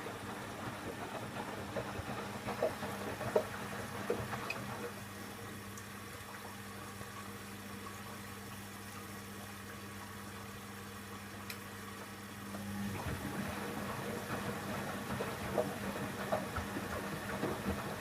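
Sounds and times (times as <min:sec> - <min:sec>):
water sloshing in washing machine drum: 0:00.0 - 0:07.0, 0:12.5 - 0:18.0
washing machine low hum: 0:00.0 - 0:18.0.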